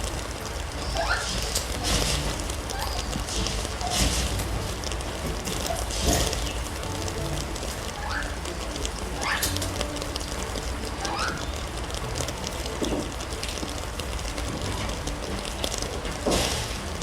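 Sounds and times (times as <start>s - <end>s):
rain pattering: 0.0s - 17.0s.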